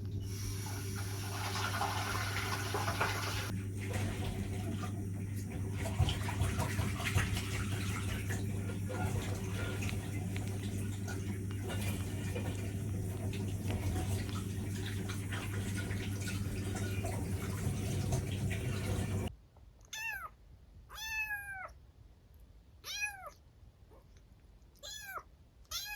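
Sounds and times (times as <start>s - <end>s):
kitten meowing: 19.8s - 21.8s, 22.8s - 24.1s, 24.7s - 25.9s.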